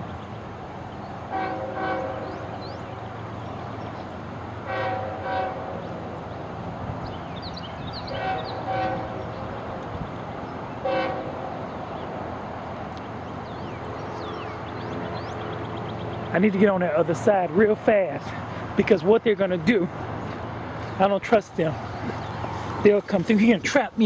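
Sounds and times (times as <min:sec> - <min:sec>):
train rumbling: 0:00.0 - 0:24.0
locomotive horn blasts: 0:01.3 - 0:02.5, 0:04.6 - 0:05.8, 0:08.1 - 0:09.3, 0:10.8 - 0:11.4.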